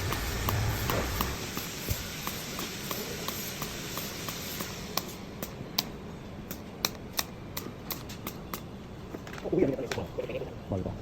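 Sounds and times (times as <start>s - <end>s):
machining hiss with ticks: 0.0s - 8.7s.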